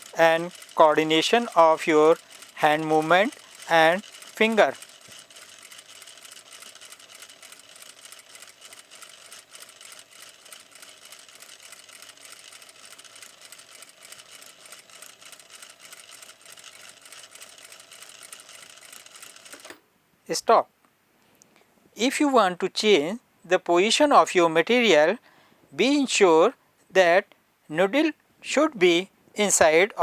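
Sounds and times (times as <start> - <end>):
sewing machine stitching: 0.0 - 19.8.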